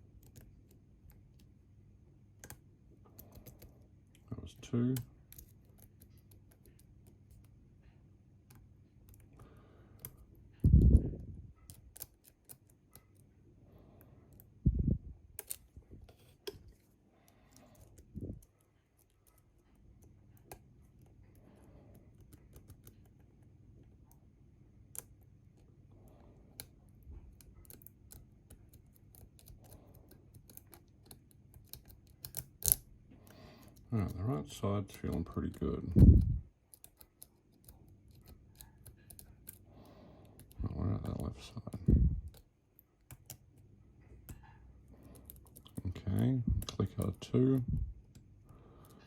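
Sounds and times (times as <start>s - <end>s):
lock picks clicking and scratching: 26.5s - 32.9s, 34.9s - 39.7s, 44.2s - 49.0s.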